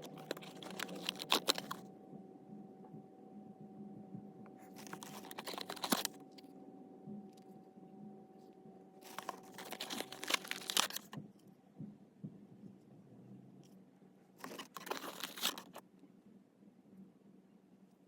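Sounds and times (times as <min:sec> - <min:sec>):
paper and cardboard crinkling: 0:00.0 - 0:01.8, 0:04.6 - 0:06.2, 0:09.0 - 0:11.2, 0:14.4 - 0:15.8
low steady hum: 0:00.0 - 0:18.0.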